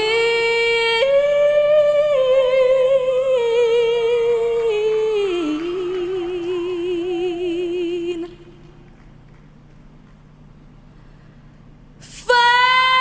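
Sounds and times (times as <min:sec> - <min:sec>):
woman singing long note: 0:00.0 - 0:08.5, 0:12.0 - 0:13.0.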